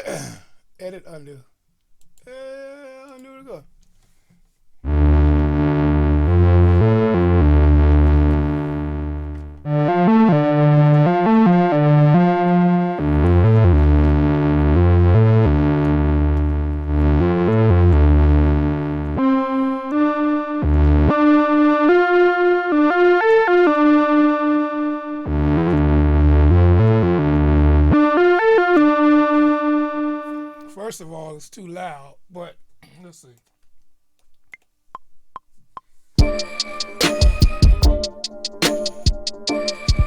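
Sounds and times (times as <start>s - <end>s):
deep bass line: 4.9s - 19.3s, 20.6s - 21.2s, 25.2s - 28.1s
plucked synth melody: 4.9s - 30.6s, 36.2s - 40.0s
synth keyboard chords: 4.9s - 30.7s, 36.2s - 40.0s.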